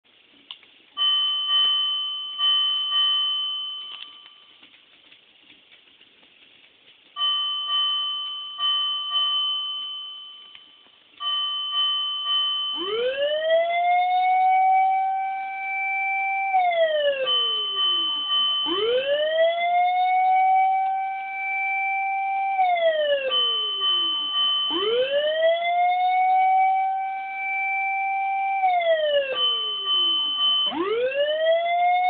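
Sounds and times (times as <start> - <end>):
electronic ringing tone: 7.2 - 26.6, 27.2 - 31.2
siren tone winding up: 10.5 - 32.0.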